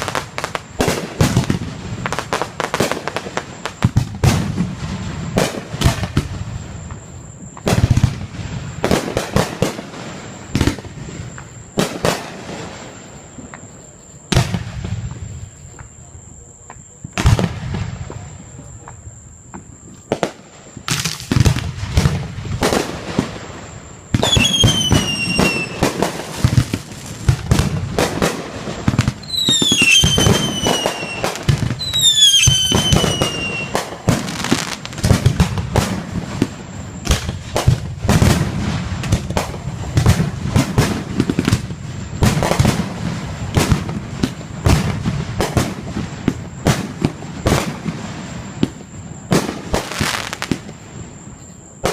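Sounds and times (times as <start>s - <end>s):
fireworks bangs and crackling: 0.0s - 51.9s
falling whistles: 22.7s - 27.0s, 28.2s - 35.0s.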